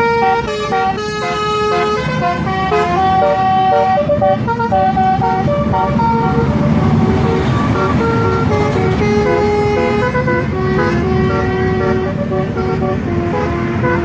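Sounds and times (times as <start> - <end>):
bus engine running: 0.0 - 14.0
multi-tone air horn tune: 0.0 - 14.0.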